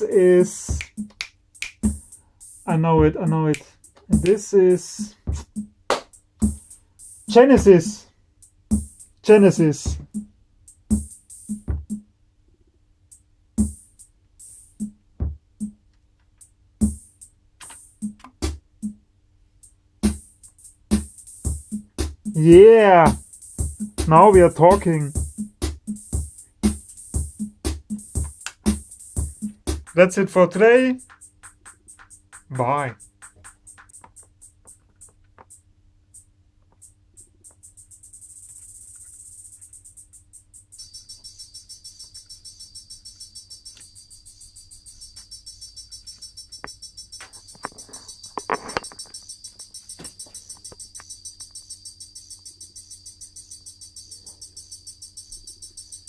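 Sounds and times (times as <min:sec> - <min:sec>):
steady hiss: 0:00.0 - 0:10.0, 0:19.6 - 0:40.8
drum machine rhythm: 0:00.0 - 0:12.1, 0:13.1 - 0:40.5.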